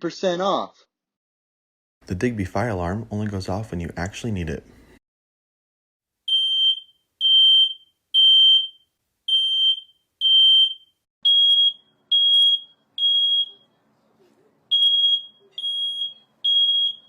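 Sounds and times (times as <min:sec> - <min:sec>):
smoke alarm beeping: 0:06.3 - 0:13.7, 0:14.7 - 0:17.0.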